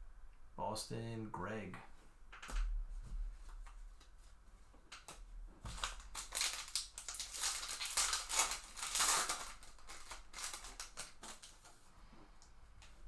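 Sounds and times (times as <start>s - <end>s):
wrapper tearing and crinkling: 5.0s - 11.8s.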